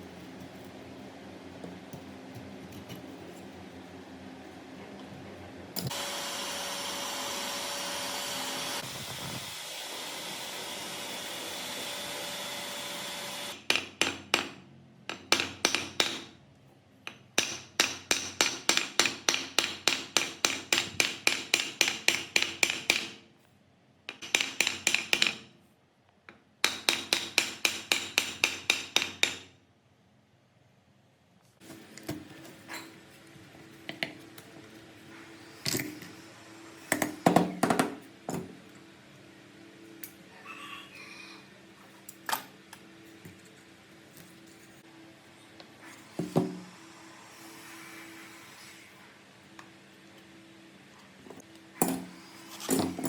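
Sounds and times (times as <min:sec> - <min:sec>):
power tool whirring: 0:05.9 - 0:13.6.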